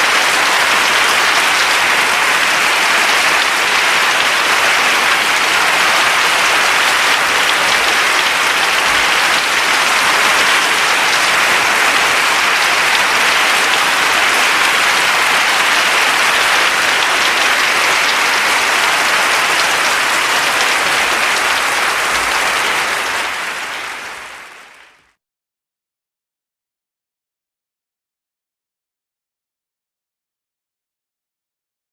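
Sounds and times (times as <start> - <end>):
large crowd applauding: 0.0 - 25.2.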